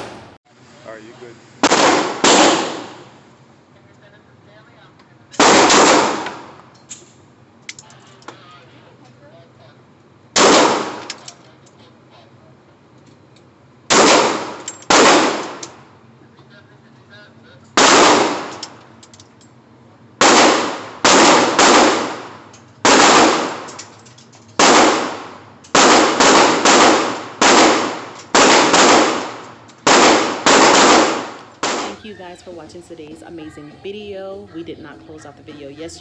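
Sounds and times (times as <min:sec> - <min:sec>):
gunshots with reverberant tail: 0:00.0 - 0:00.4, 0:01.6 - 0:03.1, 0:05.4 - 0:06.5, 0:10.4 - 0:11.1, 0:13.9 - 0:15.6, 0:17.8 - 0:18.6, 0:20.2 - 0:23.7, 0:24.6 - 0:32.7.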